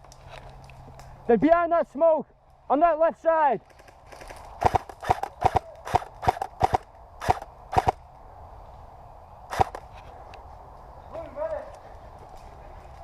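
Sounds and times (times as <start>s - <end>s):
airsoft gun shots: 4.6s - 8.0s, 9.5s - 9.8s.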